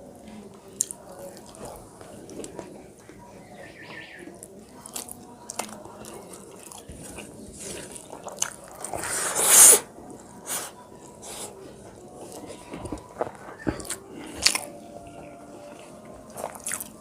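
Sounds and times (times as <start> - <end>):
wet chewing and lip-smacking: 4.8 - 9.1, 12.2 - 17.0.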